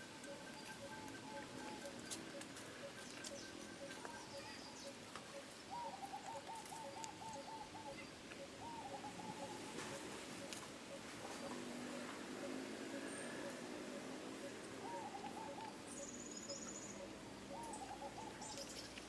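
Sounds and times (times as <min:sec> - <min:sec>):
bird trilled call: 0:00.0 - 0:19.0
regular pulsing tone: 0:06.8 - 0:18.6.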